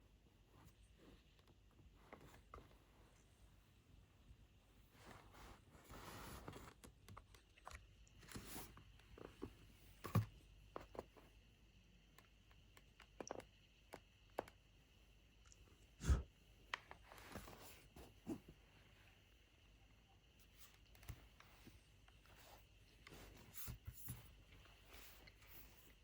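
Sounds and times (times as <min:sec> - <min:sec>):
soft rubbing: 0:00.4 - 0:06.7.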